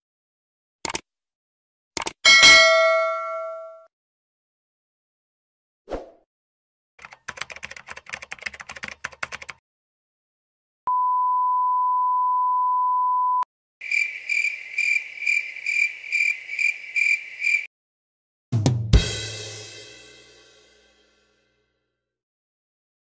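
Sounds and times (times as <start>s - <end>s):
irregular sharp clicks: 0.8s - 1.1s, 2.0s - 2.2s
censor beep: 10.9s - 13.5s
crickets chirping: 13.8s - 17.7s.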